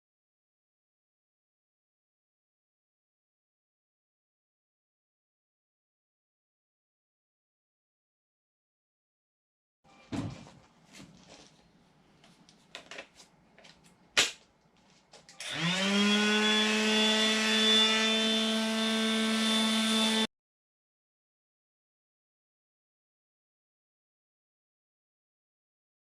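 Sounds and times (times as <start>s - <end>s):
power sander running: 15.4s - 20.3s.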